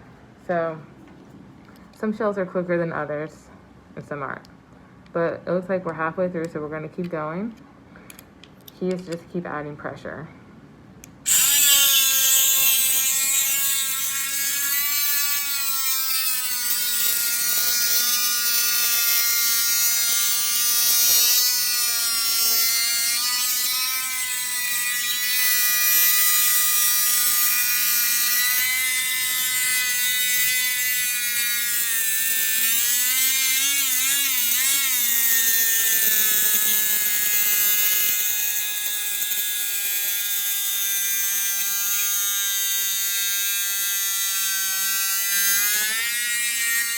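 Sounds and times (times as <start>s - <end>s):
rotary tool grinding shell: 11.2s - 46.9s.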